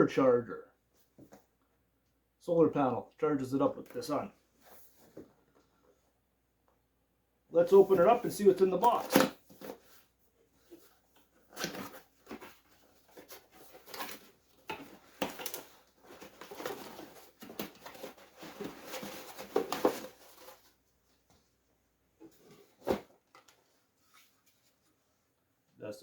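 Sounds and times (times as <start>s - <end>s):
cardboard and packaging rustling: 4.0s - 6.1s, 7.6s - 25.1s.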